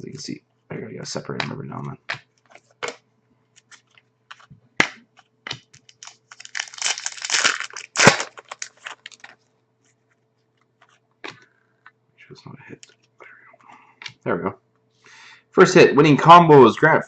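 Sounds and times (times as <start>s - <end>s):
cards rustling and clicking: 1.4s - 3.0s, 3.6s - 9.4s.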